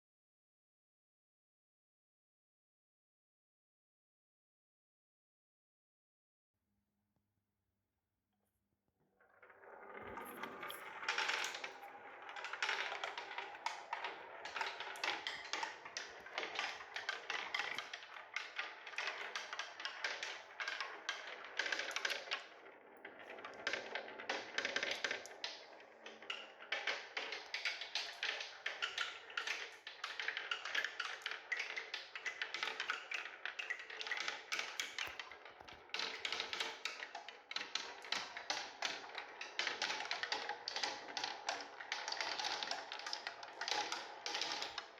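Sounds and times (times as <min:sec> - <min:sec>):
marbles rolling and clacking: 0:09.4 - 0:44.9.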